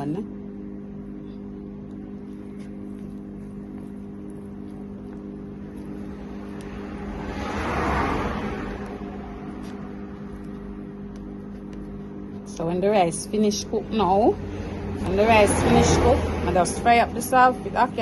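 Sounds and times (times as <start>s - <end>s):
steady electrical hum: 0.0s - 18.0s
vehicle driving past: 5.8s - 10.6s, 14.4s - 17.2s.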